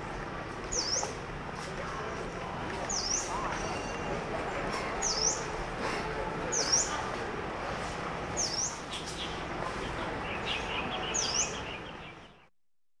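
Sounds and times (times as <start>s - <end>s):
light bird chirps: 0.6s - 1.2s.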